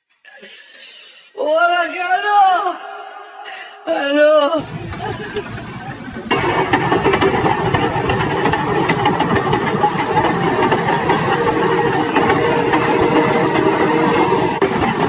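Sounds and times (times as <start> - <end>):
engine running with rapid rattle: 4.6 - 15.0.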